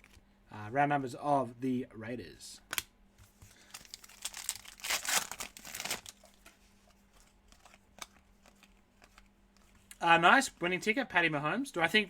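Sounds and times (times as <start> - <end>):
card pack wrapper crinkling and tearing: 3.5 - 6.5.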